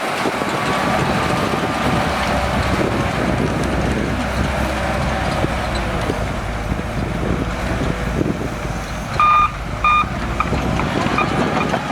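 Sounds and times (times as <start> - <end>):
bulldozer diesel engine running: 0.0 - 11.9
reversing alarm beeps: 9.2 - 10.1.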